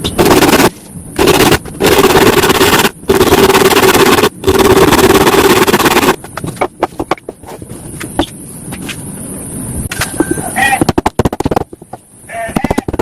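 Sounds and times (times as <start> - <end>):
sharp clicks and knocks: 0.0 - 9.0, 9.9 - 12.0.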